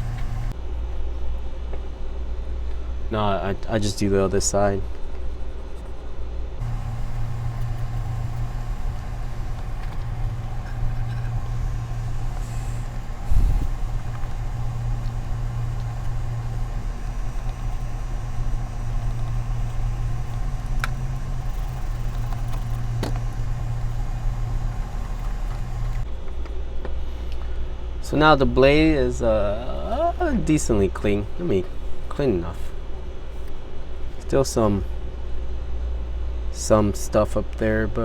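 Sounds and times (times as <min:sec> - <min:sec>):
low mechanical hum: 0:00.0 - 0:38.0
faint clicks: 0:06.6 - 0:26.0.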